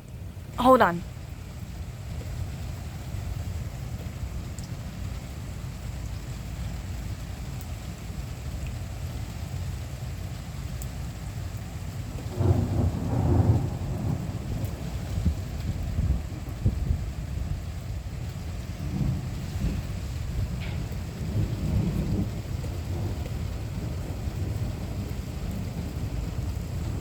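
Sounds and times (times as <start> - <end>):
steady rain: 0.0 - 27.0
thunder rumbling: 12.0 - 27.0
thunder roll: 12.1 - 17.2, 18.8 - 27.0.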